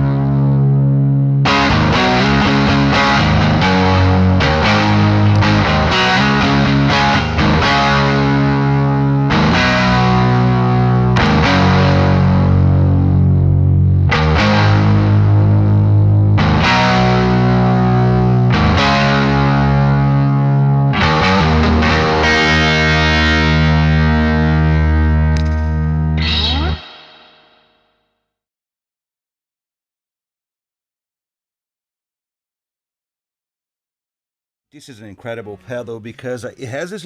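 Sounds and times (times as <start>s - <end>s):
distorted electric guitar chords: 0.0s - 28.0s.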